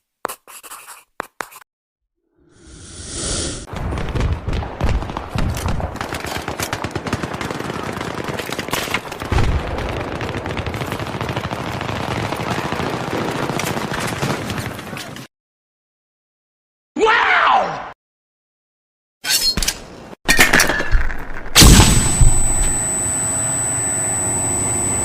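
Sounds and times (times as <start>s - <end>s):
rapid gunfire: 3.7s - 15.0s.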